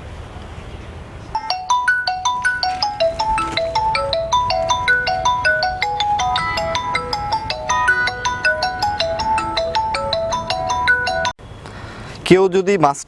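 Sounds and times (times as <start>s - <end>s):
mobile phone ringtone: 1.4s - 11.4s.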